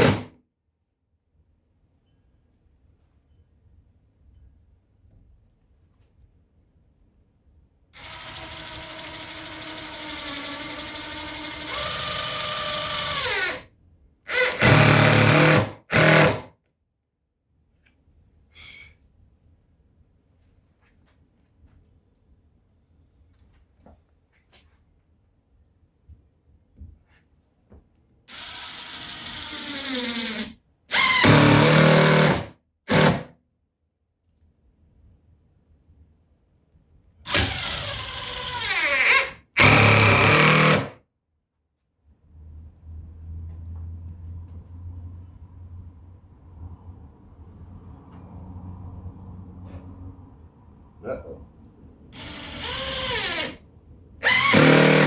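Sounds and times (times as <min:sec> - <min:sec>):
power drill driving screws: 0:00.0 - 0:00.3, 0:08.0 - 0:13.7, 0:14.3 - 0:16.5, 0:28.3 - 0:33.3, 0:37.3 - 0:40.9, 0:52.2 - 0:53.6, 0:54.2 - 0:55.0.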